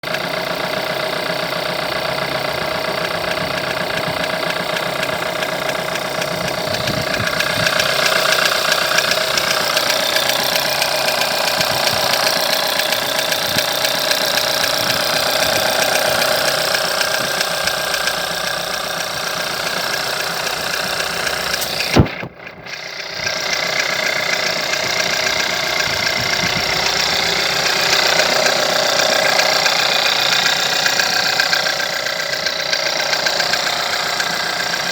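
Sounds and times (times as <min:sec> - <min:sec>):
car engine running with knocking: 0:00.0 - 0:34.9
sharp click: 0:20.8 - 0:23.4.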